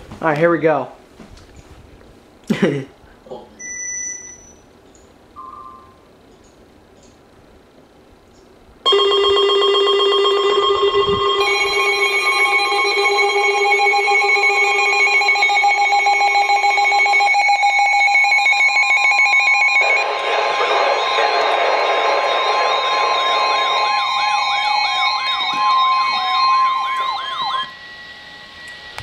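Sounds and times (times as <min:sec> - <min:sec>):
second alarm tone: 0:08.9 - 0:29.0
warbling alarm tones: 0:08.9 - 0:29.0.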